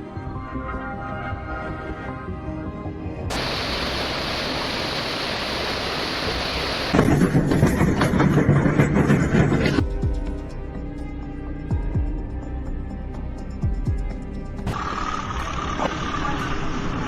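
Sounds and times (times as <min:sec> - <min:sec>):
storm rushing hiss: 0:03.3 - 0:07.2.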